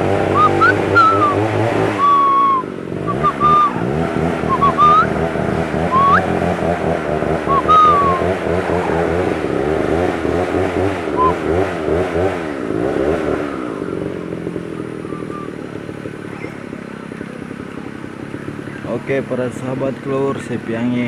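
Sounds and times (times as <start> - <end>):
motorcycle engine running: 0.0 - 21.0
high whistle-like chirps: 0.3 - 1.4, 2.0 - 5.2, 5.9 - 6.4, 7.5 - 8.4, 11.2 - 11.4.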